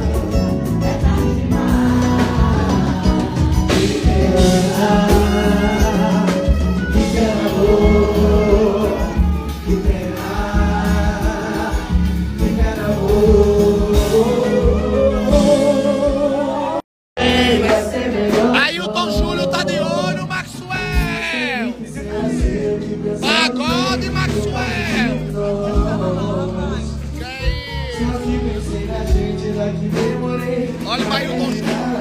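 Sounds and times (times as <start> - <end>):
band playing: 0.0 - 32.0
voices singing together: 0.0 - 32.0.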